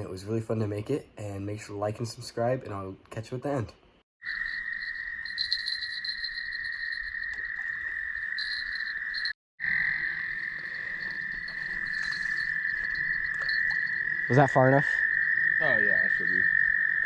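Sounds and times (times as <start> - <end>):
frogs and insects calling: 4.2 - 17.0.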